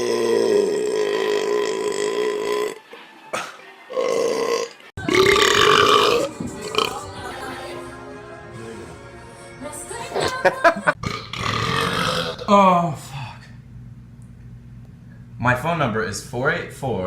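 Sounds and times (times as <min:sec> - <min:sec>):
people belching loudly: 0:00.0 - 0:02.8, 0:03.9 - 0:07.0, 0:11.0 - 0:12.6.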